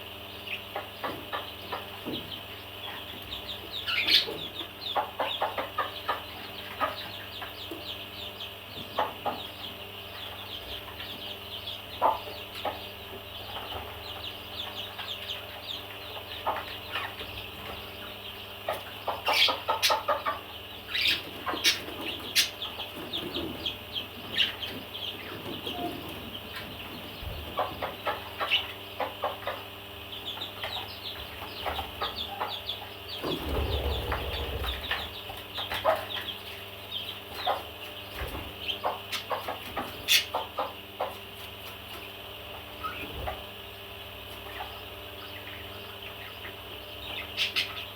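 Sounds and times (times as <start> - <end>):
parrots chattering: 19.1 - 22.8.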